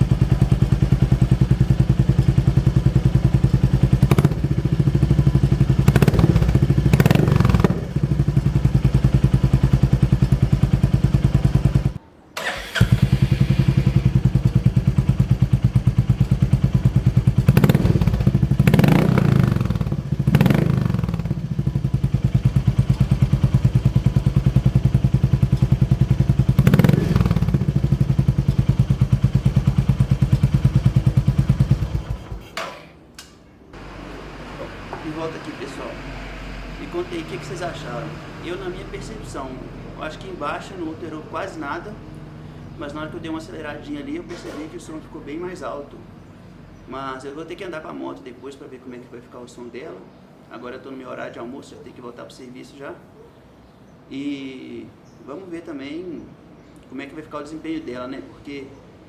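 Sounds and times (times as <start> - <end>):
motorcycle engine idling: 0.0 - 32.4
motorcycle throttle blips: 0.0 - 32.4.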